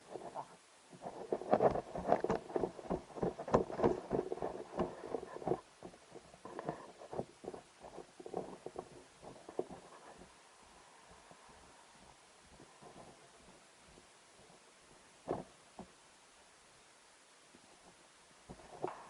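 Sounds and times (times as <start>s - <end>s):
rustling: 0.0s - 16.0s, 17.5s - 19.0s
quick footsteps: 0.1s - 10.3s.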